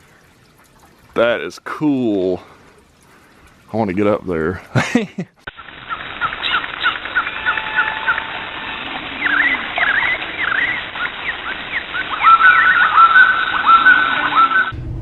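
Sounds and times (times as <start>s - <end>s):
steady hiss: 1.1s - 14.7s
birds chirping: 5.5s - 14.7s.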